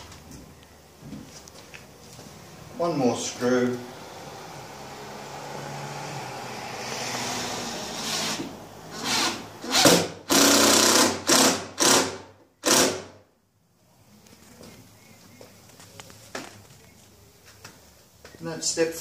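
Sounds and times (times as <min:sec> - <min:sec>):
power drill driving a screw: 0:07.0 - 0:13.1.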